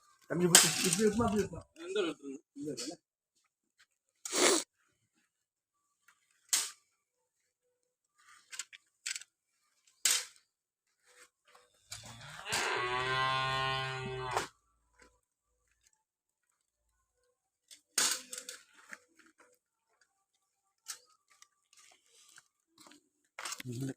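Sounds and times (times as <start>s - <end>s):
cow mooing: 12.0s - 14.5s.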